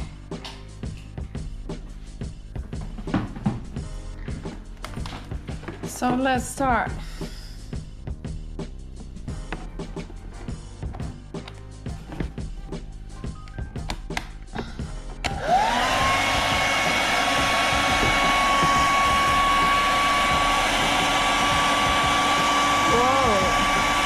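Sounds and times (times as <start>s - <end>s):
hair dryer running: 14.6s - 24.0s.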